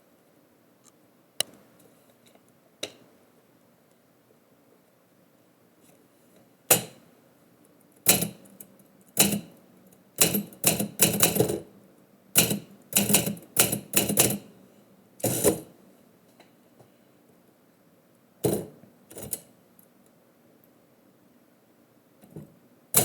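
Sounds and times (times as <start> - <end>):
typewriter keys clacking: 8.1 - 8.5.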